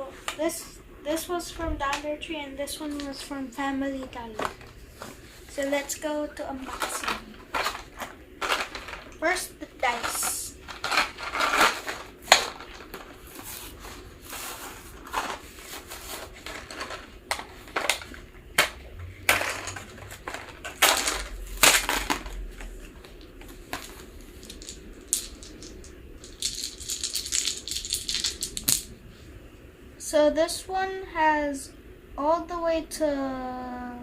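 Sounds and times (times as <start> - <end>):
plastic wrapping crinkling: 6.5 - 9.2, 9.8 - 18.3
dice clicking and knocking: 23.0 - 28.9.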